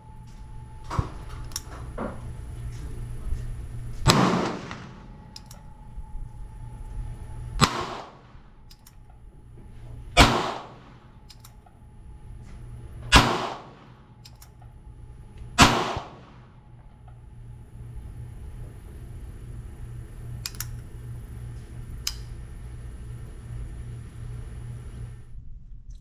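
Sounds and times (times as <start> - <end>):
revolver gunshots: 4.0 - 5.9, 7.6 - 8.5, 10.2 - 11.3, 13.1 - 14.2, 15.6 - 16.7.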